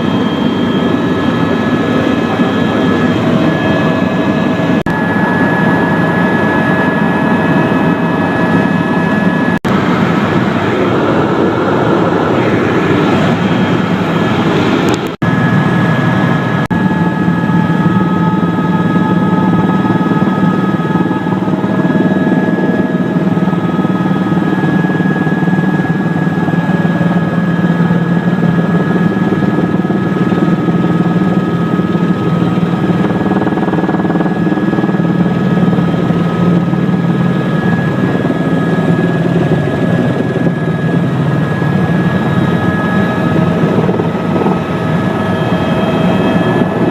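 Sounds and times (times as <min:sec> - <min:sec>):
helicopter engine and rotors drone: 0:00.0 - 0:46.9.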